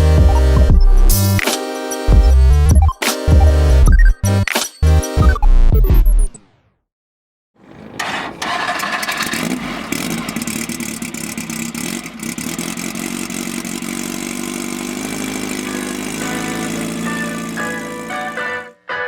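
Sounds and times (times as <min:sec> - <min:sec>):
race vehicle engine running: 0:07.6 - 0:18.6.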